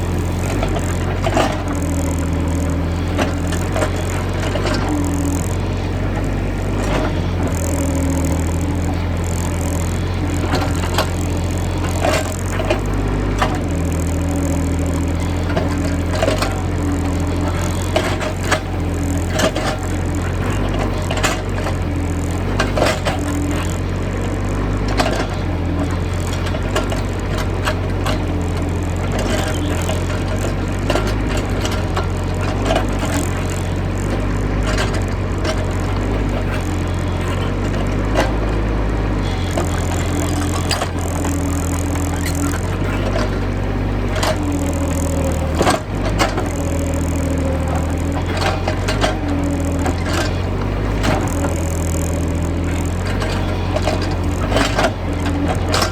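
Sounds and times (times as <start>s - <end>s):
excavator diesel engine: 0.0s - 55.9s.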